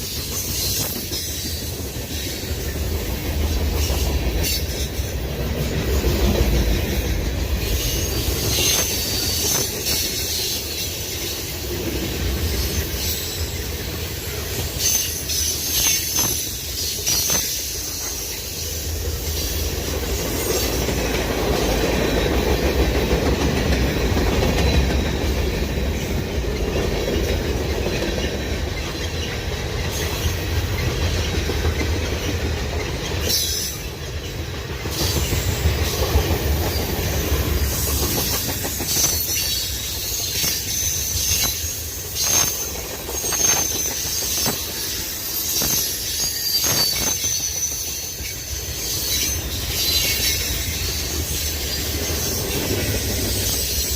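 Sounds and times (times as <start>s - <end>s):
train cars rumbling past: 0.0s - 53.9s
wheels clicking over rail joints: 0.0s - 53.9s
high wheel squeal: 6.9s - 11.6s, 12.5s - 19.7s, 36.7s - 53.9s.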